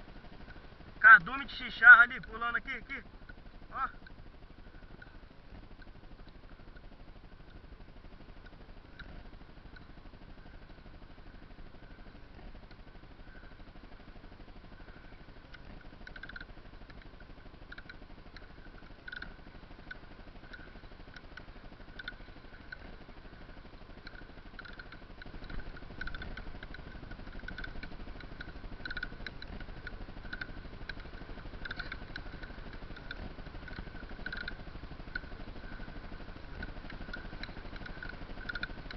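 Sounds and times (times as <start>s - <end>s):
kayak pedal drive squeaking: 16.0s - 22.9s, 23.9s - 38.9s.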